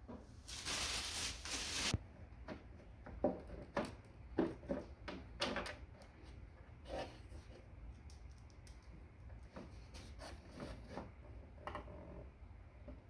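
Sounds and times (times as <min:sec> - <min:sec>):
scraping rustle: 0:00.5 - 0:02.0.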